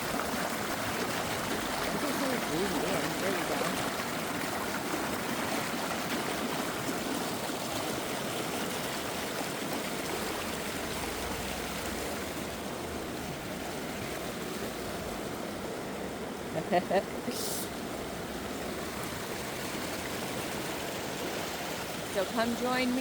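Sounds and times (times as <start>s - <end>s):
river water rushing: 0.0s - 23.0s.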